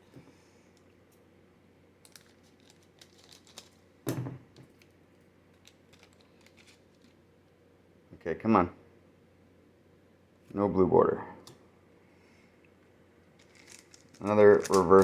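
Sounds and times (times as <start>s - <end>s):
trading cards clicking and rustling: 5.6s - 7.2s, 13.4s - 15.0s.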